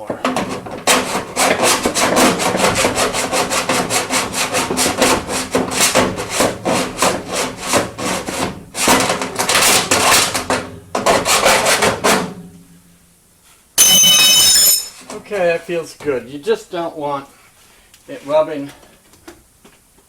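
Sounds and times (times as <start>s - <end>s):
file scraping sheet metal: 0.0s - 12.4s.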